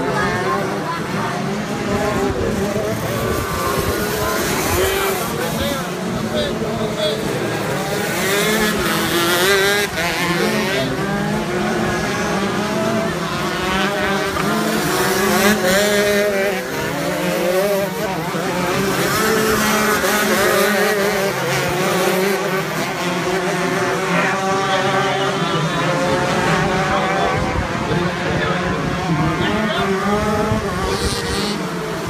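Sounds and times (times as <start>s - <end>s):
kart engines revving: 0.0s - 32.0s.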